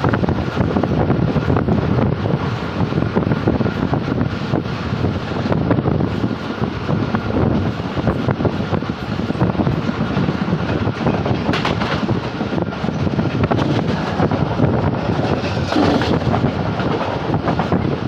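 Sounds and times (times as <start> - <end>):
train wheels rumbling on rail: 0.0 - 18.0
wagons clanking: 12.9 - 17.8.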